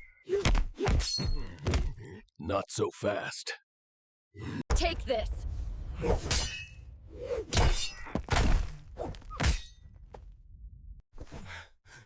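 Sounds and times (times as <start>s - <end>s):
cartoon whacks and thuds: 0.4s - 1.1s.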